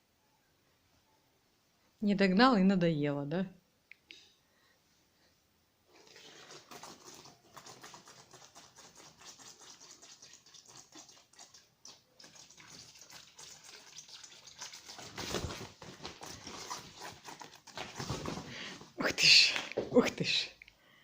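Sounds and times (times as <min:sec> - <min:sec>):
paper rustling and crackling: 0:14.8 - 0:18.9.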